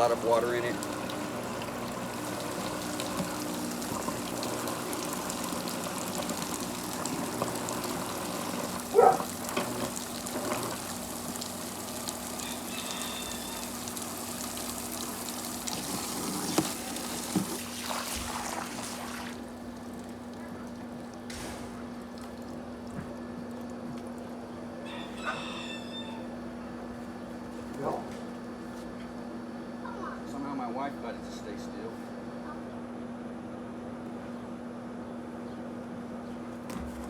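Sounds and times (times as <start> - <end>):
water gushing into pool: 0.0 - 24.4
pool filter pump humming: 0.0 - 37.0.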